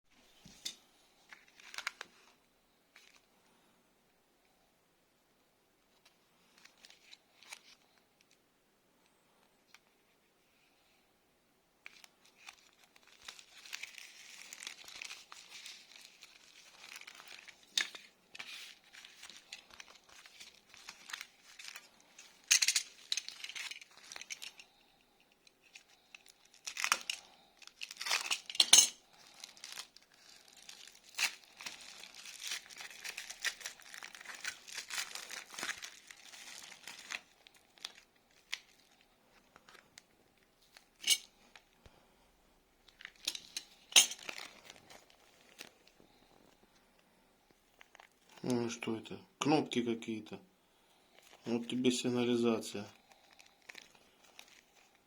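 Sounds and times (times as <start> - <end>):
packaging crinkling and tearing: 1.3 - 2.3, 11.8 - 24.8, 25.5 - 41.8, 42.8 - 46.7, 47.6 - 48.6, 51.0 - 55.0.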